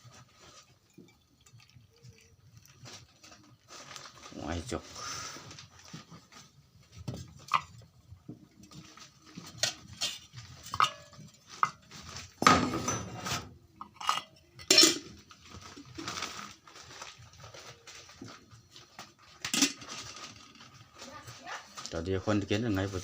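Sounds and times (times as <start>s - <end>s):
dishes and utensils clattering: 7.0s - 16.6s, 18.4s - 21.1s.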